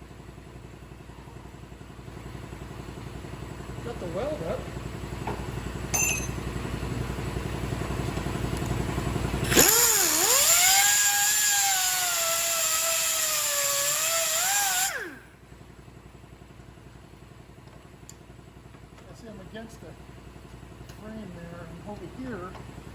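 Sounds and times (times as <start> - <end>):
power grinder whining on metal: 9.4 - 15.3.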